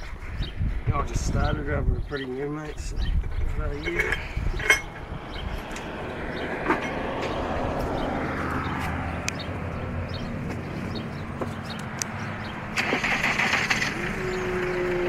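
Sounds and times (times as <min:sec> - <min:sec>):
passing vehicle rumbling: 0:03.1 - 0:15.0.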